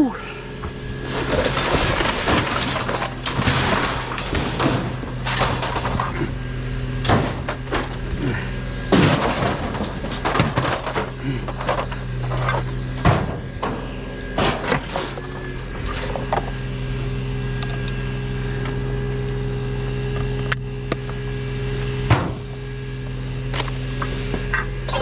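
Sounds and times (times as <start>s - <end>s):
steady low hum: 0.0s - 25.0s
hard objects clattering: 1.0s - 15.3s.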